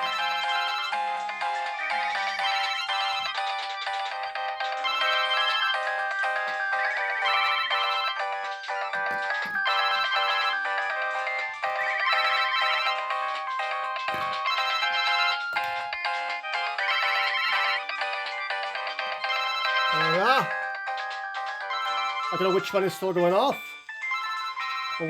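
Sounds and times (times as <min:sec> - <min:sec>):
many phone alarms ringing: 0:00.0 - 0:25.0.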